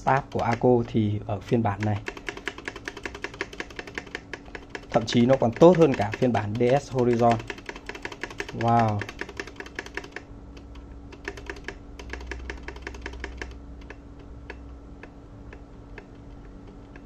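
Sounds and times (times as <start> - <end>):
mechanical keyboard keys clacking: 0.3 - 15.1.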